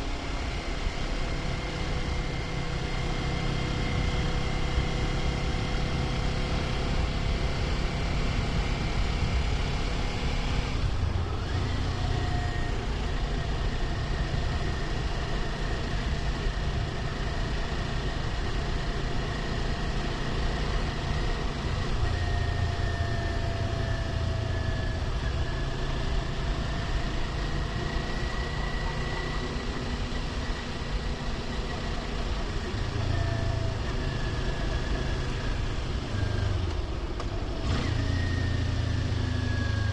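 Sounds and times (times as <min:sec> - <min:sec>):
motorcycle engine cruising: 0:00.0 - 0:39.9
wind and road noise: 0:00.0 - 0:39.9.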